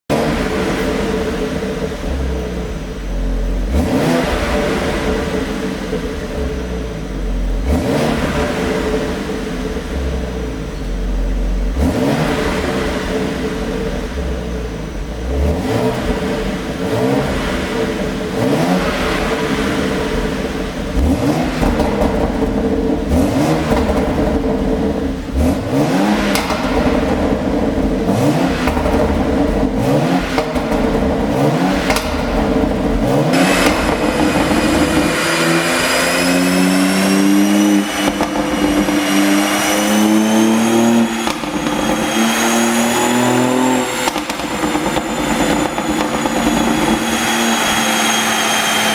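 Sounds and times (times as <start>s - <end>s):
engine revving: 0.1s - 48.9s
exhaust popping and crackling: 0.1s - 48.9s
high whine: 26.3s - 48.9s.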